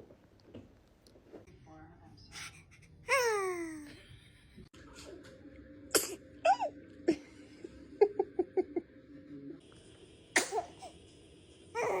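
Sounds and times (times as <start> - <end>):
baby sneeze: 10.4 - 10.9.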